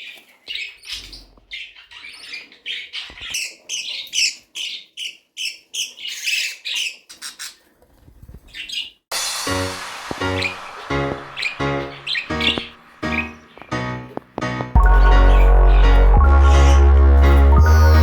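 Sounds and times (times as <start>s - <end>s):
budgerigars chirping and squawking: 0.0s - 7.7s, 8.5s - 9.0s, 11.2s - 14.2s, 14.8s - 17.4s
music: 9.1s - 18.0s.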